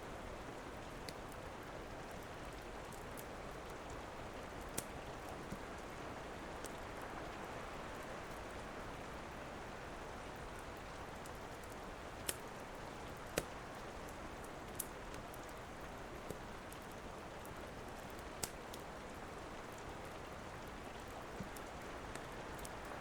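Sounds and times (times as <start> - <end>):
steady rain: 0.0 - 23.0
wood fire crackling: 0.8 - 5.9, 10.5 - 19.9, 20.6 - 23.0.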